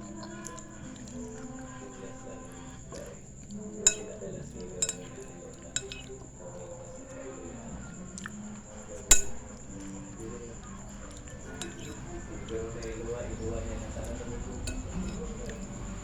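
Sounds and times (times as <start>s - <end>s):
spoon clinking against bowl: 2.8s - 7.2s, 7.9s - 16.0s.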